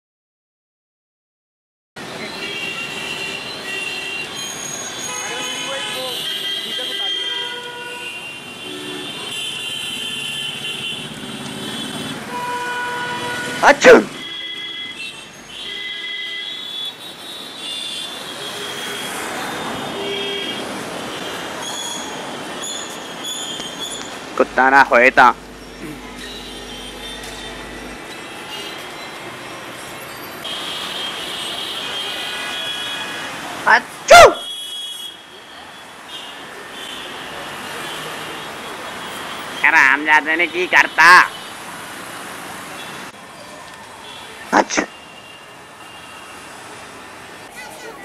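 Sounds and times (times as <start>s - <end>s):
short high-pitched horns or squeals: 2.2s - 11.0s, 11.7s - 33.2s
rush of passing vehicles: 7.9s - 15.7s, 17.0s - 34.4s, 35.4s - 48.0s
loud noise with high whining: 21.6s - 30.6s.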